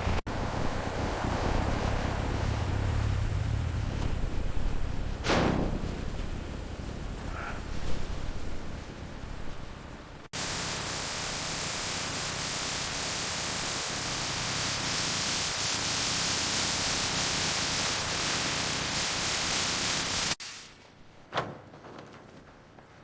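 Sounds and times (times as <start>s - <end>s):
steady hiss: 10.3s - 21.2s.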